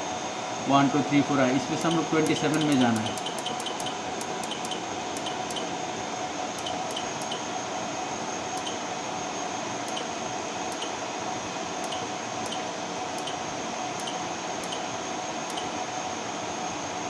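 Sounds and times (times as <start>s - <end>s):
fan-like hum: 0.0s - 17.0s
keypad click-beeps: 1.8s - 5.7s, 6.6s - 7.4s, 8.6s - 8.8s, 9.9s - 10.1s, 10.7s - 11.0s, 11.8s - 13.4s, 14.0s - 14.9s, 15.5s - 15.8s.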